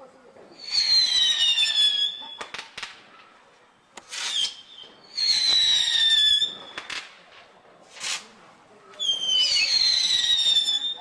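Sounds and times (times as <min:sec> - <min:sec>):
whistling fireworks: 0:00.5 - 0:11.0
firework pops: 0:00.8 - 0:11.0
short hissing burst: 0:04.0 - 0:04.6.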